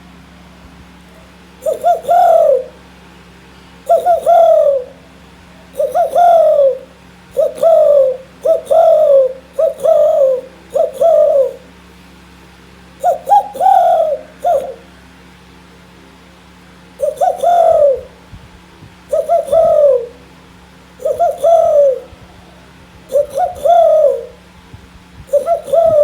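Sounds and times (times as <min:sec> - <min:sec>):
person imitating dove cooing: 0:01.6 - 0:02.8, 0:03.9 - 0:05.0, 0:05.7 - 0:11.7, 0:13.0 - 0:14.9, 0:17.0 - 0:18.2, 0:19.0 - 0:20.2, 0:21.0 - 0:24.4, 0:25.2 - 0:26.0.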